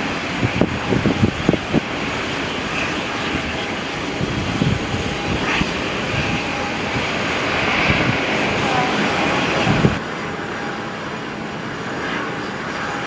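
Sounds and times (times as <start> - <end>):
wind thumps on microphone: 0.0 - 10.0
airliner engines running: 0.0 - 13.0.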